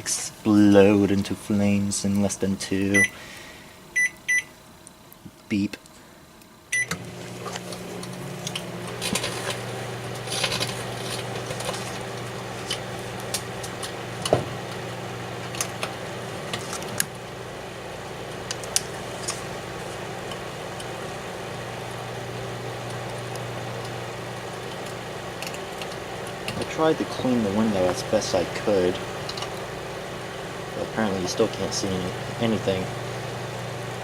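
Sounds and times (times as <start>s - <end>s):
microwave oven humming: 0.0s - 34.0s
electrical arcing crackles: 7.2s - 17.1s.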